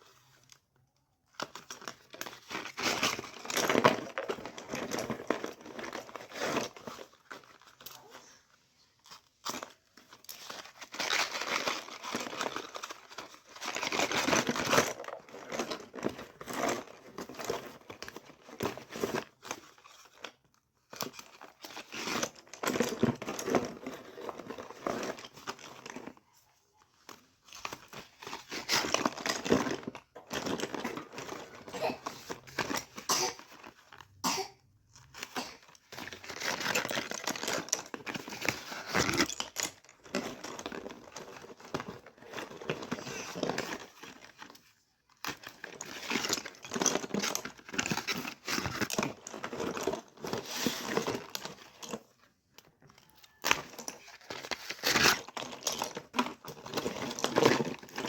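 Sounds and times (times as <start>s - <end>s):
packaging crinkling and tearing: 9.4s - 26.2s, 34.9s - 44.5s, 53.0s - 58.0s.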